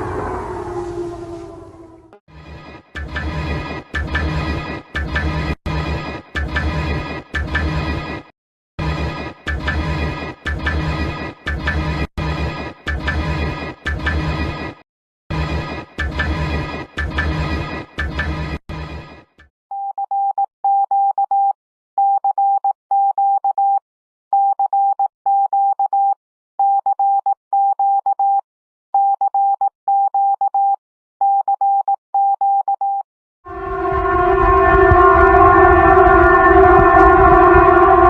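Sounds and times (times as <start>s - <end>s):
multi-tone siren alarm: 0.0s - 2.2s, 33.5s - 38.0s
harsh pulsing alarm: 0.0s - 5.6s, 33.5s - 38.0s.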